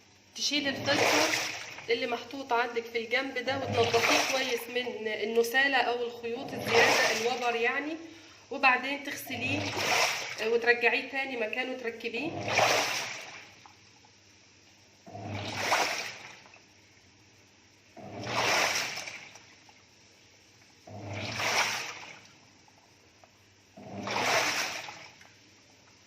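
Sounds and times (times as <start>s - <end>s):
washing machine water swishing: 0.0s - 5.2s, 6.2s - 7.9s, 9.0s - 10.8s, 12.0s - 14.0s, 15.0s - 16.7s, 17.9s - 20.0s, 20.6s - 23.0s, 23.7s - 26.0s
low motor hum: 3.4s - 4.3s.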